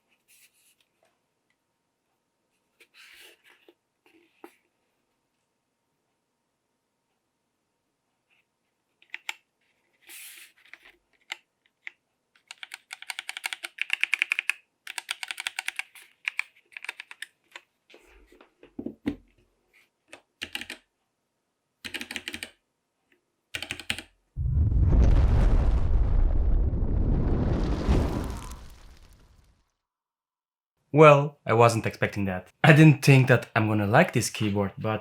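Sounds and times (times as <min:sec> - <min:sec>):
mechanical keyboard key clacks: 0:12.4 - 0:17.3
loud rumbling burst: 0:24.4 - 0:29.4.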